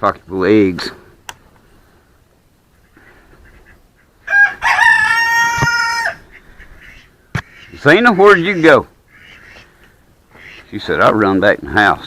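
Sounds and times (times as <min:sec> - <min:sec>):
rooster crowing: 0:04.2 - 0:06.2.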